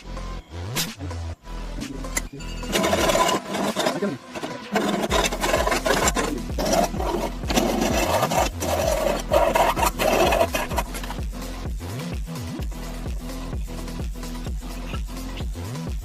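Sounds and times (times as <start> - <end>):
background music with bass beat: 0.0 - 3.4, 4.0 - 16.0
rasping rubbing strokes: 2.7 - 11.3.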